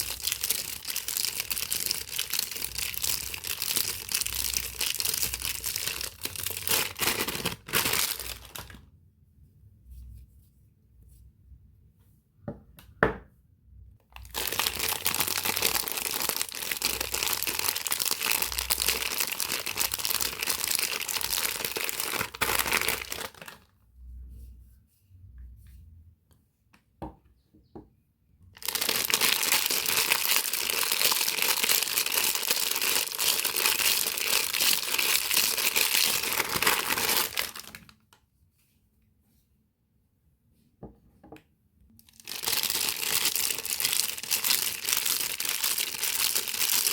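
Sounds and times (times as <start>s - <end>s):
packaging crinkling and tearing: 0.0s - 8.9s, 14.2s - 23.7s, 28.6s - 38.1s, 42.0s - 46.9s.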